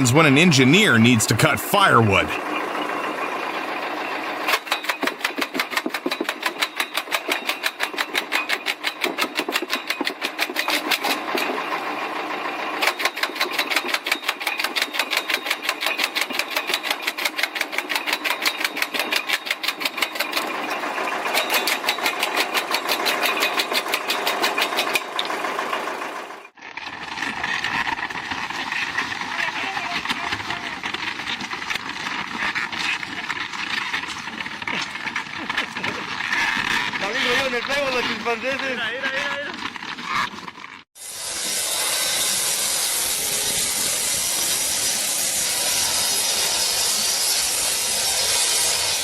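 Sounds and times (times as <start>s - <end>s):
firewood cutting machine clatter: 0.0s - 49.0s.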